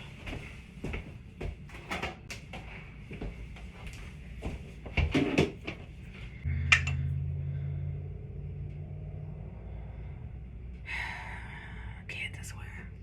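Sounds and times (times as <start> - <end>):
steady low hum: 0.0 - 13.0
drawers and cupboards rummaged: 5.0 - 5.9.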